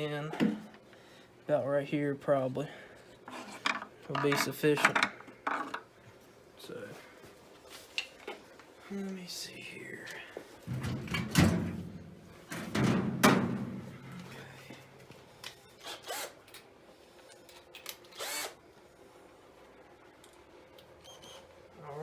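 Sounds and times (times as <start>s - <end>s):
cordless drill driving screw: 15.8s - 16.4s, 18.0s - 18.6s.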